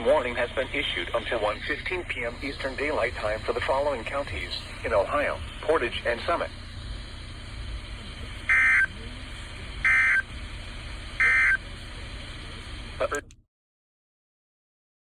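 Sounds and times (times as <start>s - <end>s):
hissy humming radio signal: 0.0s - 13.3s
warbling data tones: 8.5s - 9.0s, 9.8s - 10.3s.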